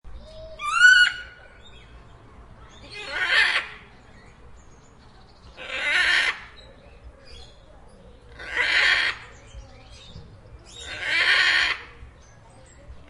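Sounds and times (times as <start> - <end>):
parrot squawking: 2.9 - 3.8, 8.4 - 9.2, 10.8 - 11.9.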